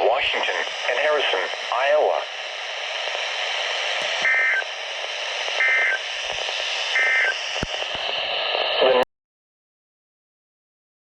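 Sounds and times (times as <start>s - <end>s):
radio static hiss: 0.0s - 9.1s
digital warbling data bursts: 5.6s - 6.2s, 6.9s - 7.9s.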